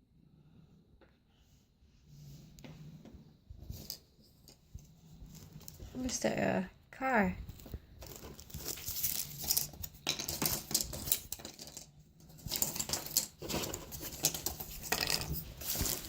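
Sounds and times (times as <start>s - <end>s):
puzzle pieces clicking and rattling: 8.0s - 16.0s.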